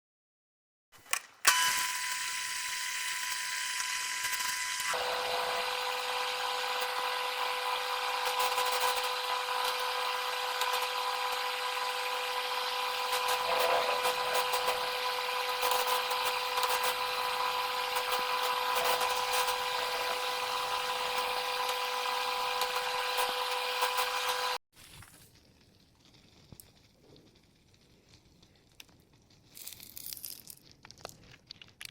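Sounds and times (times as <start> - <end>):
microwave oven humming: 1.5 - 24.6.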